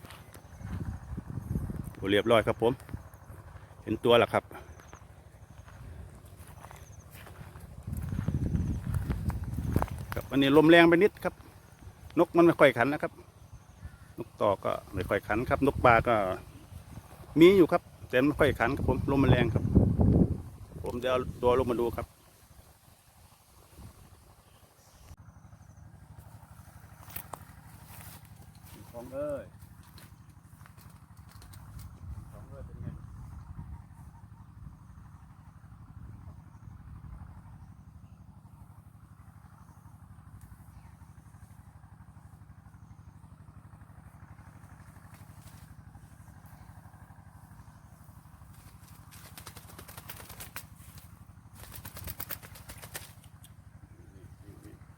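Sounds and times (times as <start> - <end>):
wind rumble on microphone: 0.0 - 2.0, 7.3 - 10.4, 18.4 - 22.0, 31.7 - 37.6
small engine idling: 0.0 - 54.9.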